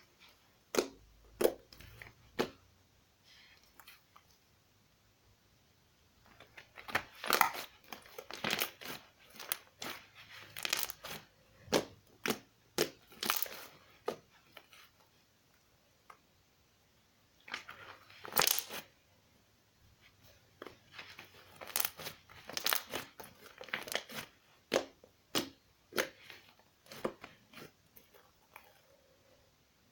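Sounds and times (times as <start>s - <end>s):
slime squishing and crackling: 6.6s - 14.2s, 20.6s - 28.8s.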